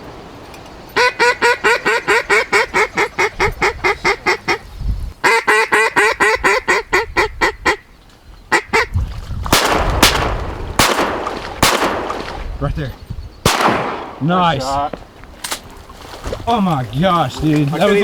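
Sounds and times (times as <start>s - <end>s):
duck call quacks: 1.0s - 4.6s, 5.2s - 7.8s
gunshot crack: 9.5s - 12.9s, 13.5s - 14.7s.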